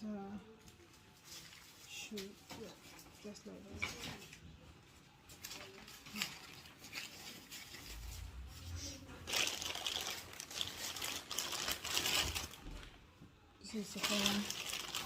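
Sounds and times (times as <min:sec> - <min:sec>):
packaging rustling and crinkling: 0:05.2 - 0:13.1, 0:13.7 - 0:15.0.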